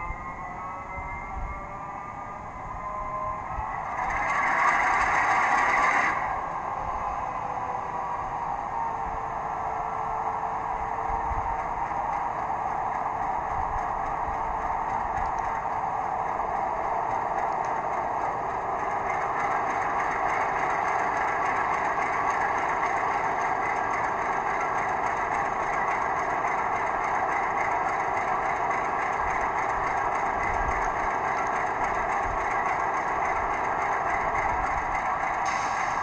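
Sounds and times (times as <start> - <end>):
diesel engine through small speaker: 0.8 - 9.6.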